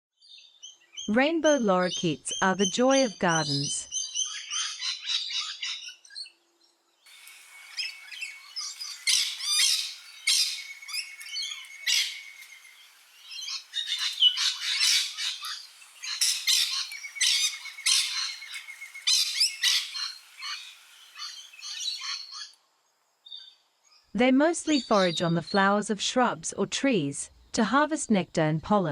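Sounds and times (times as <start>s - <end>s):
parrots screeching and chattering: 7.1s - 22.4s.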